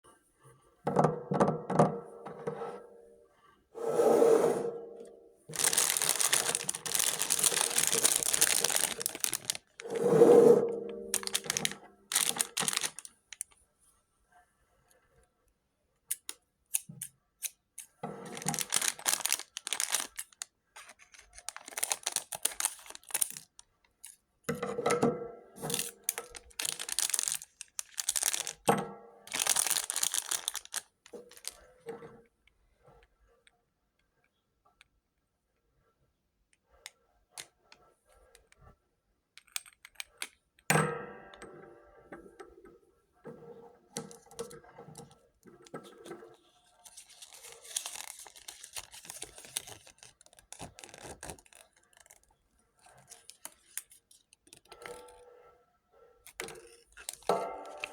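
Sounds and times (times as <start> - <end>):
packaging ripping: 5.5 - 10.0, 11.1 - 13.4, 18.2 - 23.6, 25.7 - 28.7, 29.3 - 31.6, 46.8 - 52.2
plastic packaging crinkling: 5.5 - 10.0, 11.0 - 13.6, 18.2 - 23.7, 25.7 - 28.7, 29.3 - 31.6, 46.6 - 52.3, 57.0 - 57.9.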